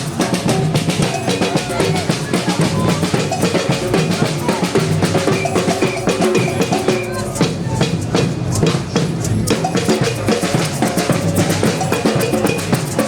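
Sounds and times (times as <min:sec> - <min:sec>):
percussion group drumming: 0:00.0 - 0:13.0.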